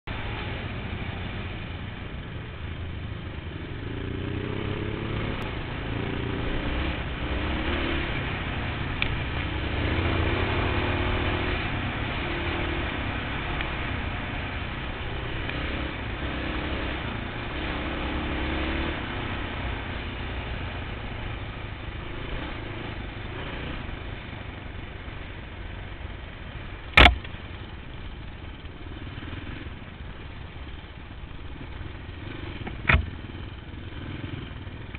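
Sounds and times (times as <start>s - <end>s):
sharp bang: 27.0s - 27.2s.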